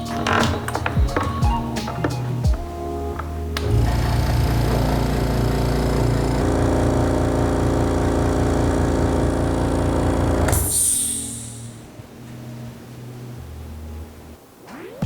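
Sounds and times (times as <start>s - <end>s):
air compressor motor running: 3.6s - 11.6s
hiss of released air: 10.5s - 11.8s.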